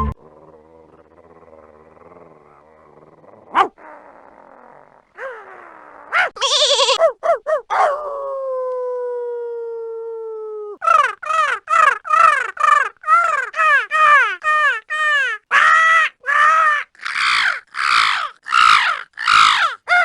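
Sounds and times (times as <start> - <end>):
animal calls: 5.2 - 7.8, 15.5 - 20.0.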